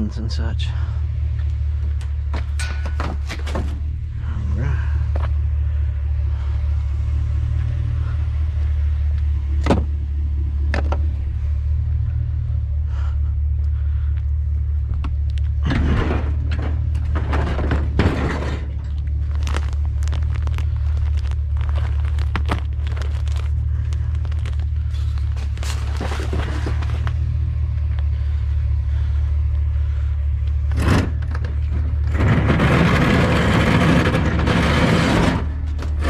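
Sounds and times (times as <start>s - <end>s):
steady low rumble: 0.0s - 36.0s
clattering and rustling: 2.0s - 4.0s, 15.5s - 28.2s.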